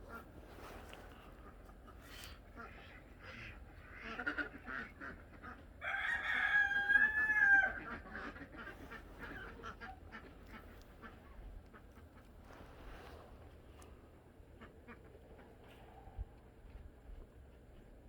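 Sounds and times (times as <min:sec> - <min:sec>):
ducks quacking: 0:00.0 - 0:05.8, 0:07.5 - 0:13.2, 0:14.4 - 0:15.4
rooster crowing: 0:05.8 - 0:07.9
chickens clucking: 0:07.5 - 0:12.9.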